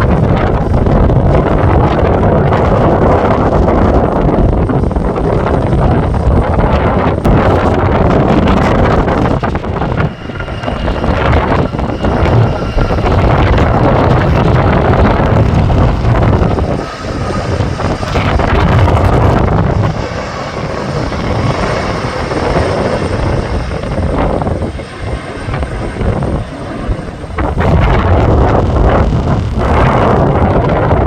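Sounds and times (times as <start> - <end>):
wind buffeting microphone: 0.0 - 31.0.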